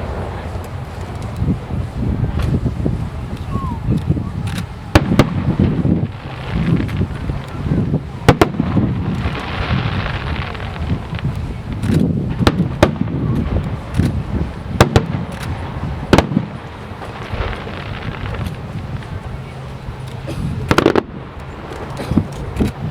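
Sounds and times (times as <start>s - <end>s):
firework bangs: 0.0s - 22.9s
fireworks crackling: 0.0s - 22.9s
low rumble of fireworks: 0.0s - 22.9s.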